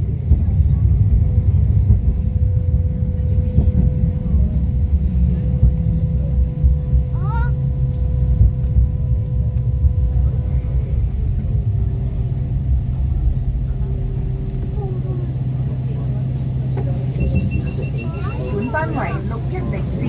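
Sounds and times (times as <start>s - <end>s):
constant hum: 0.0s - 20.0s
rail car rumbling on track: 0.0s - 20.0s.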